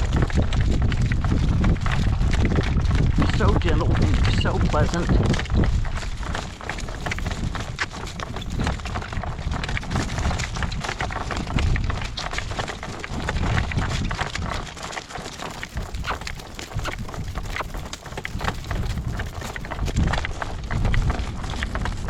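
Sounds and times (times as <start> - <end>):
horse hoof clicks: 5.0 - 20.5.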